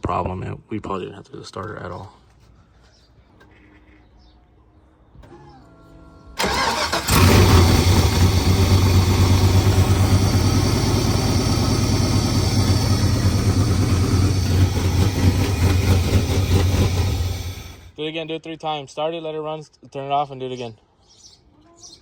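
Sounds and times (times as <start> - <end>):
car engine running loud: 6.4 - 17.9
car engine starter cranking: 6.4 - 17.9.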